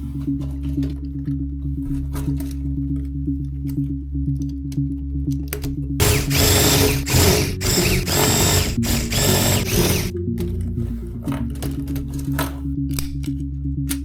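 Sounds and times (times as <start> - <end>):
toy motors ratcheting rattle: 6.0 - 10.1.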